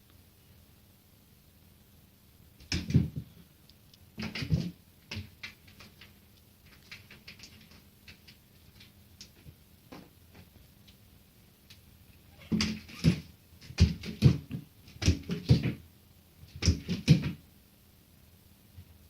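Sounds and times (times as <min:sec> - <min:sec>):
cat thumping against window: 0:02.6 - 0:03.3, 0:04.2 - 0:05.8
light taps and scratches: 0:04.2 - 0:11.0.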